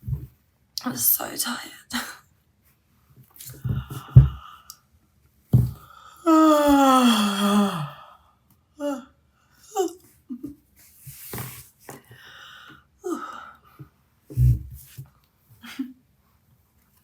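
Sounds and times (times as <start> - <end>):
breathy vocal sounds and breaths: 3.5 - 4.8, 5.6 - 9.6, 12.0 - 14.7
woman yawning: 6.2 - 8.1.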